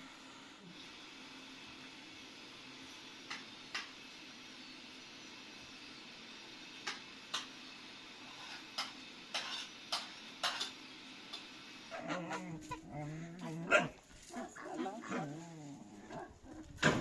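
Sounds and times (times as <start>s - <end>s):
dog whimpering: 11.9s - 13.9s.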